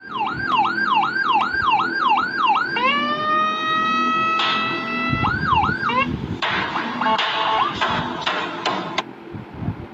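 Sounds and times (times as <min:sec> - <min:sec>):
electronic siren yelp and whoop: 0:00.0 - 0:06.1.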